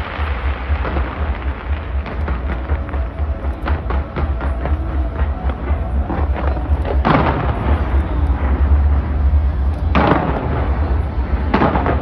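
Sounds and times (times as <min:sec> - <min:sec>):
deep rumble: 0:00.0 - 0:12.0
fireworks bangs: 0:00.0 - 0:12.0.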